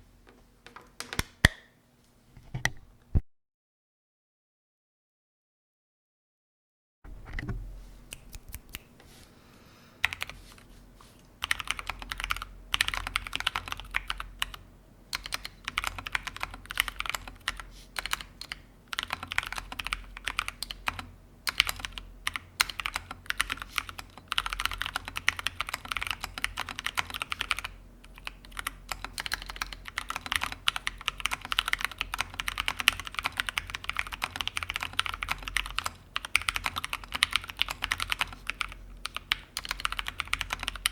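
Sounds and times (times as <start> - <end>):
mechanical keyboard typing: 10.0 - 10.3, 11.4 - 40.9.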